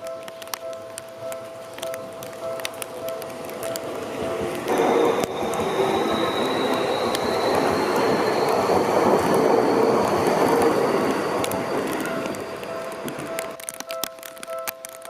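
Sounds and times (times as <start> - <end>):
train wheel-on-rail rumble: 0.0 - 13.6
thin high whine: 2.9 - 13.6.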